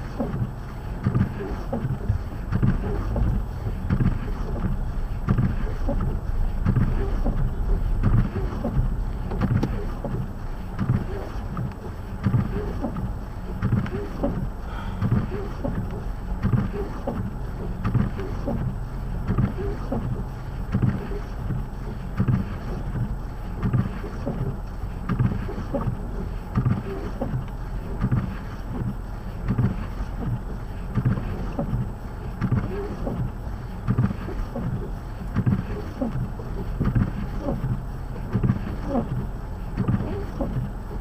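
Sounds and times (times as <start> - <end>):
car driving rumble: 0.0 - 41.0
low thumps: 0.4 - 15.2.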